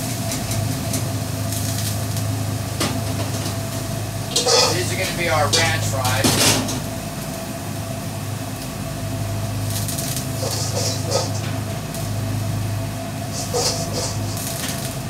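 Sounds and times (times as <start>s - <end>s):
kitchen equipment humming: 0.0s - 15.0s
brief hissing bursts: 13.3s - 14.6s.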